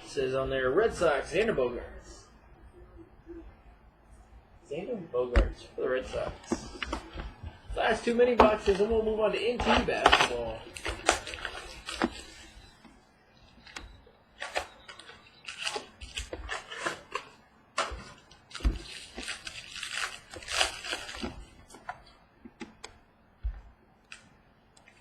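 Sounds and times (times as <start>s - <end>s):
packaging crinkling and rustling: 6.1s - 12.6s, 14.4s - 22.2s.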